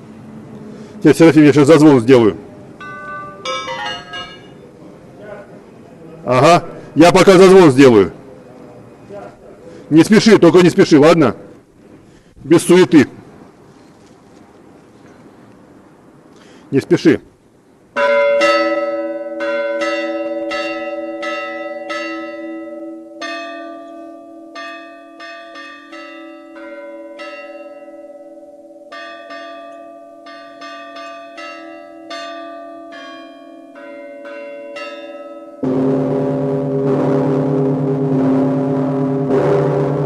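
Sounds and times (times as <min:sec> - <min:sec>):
lower church bell: 0:02.8 - 0:04.6, 0:18.0 - 0:40.0
deep loud bell ringing: 0:02.8 - 0:04.8, 0:18.0 - 0:40.0
small church bells ringing: 0:02.8 - 0:04.8, 0:18.0 - 0:40.0.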